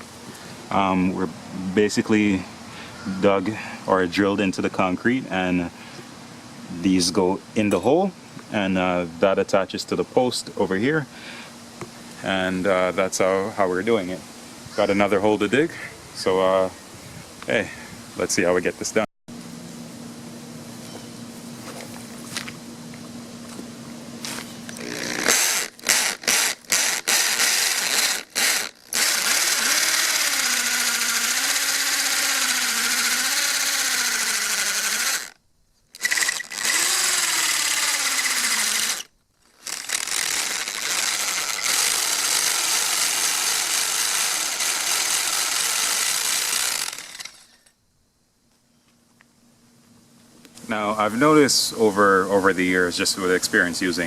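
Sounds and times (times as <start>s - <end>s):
power drill boring into concrete: 24.8s - 35.4s, 36.0s - 47.7s.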